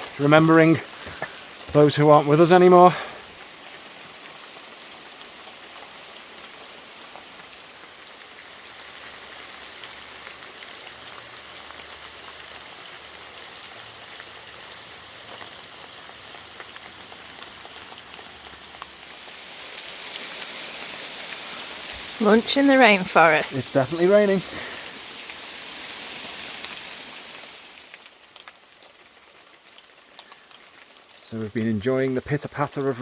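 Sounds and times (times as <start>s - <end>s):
rain falling on foliage: 0.0s - 33.0s.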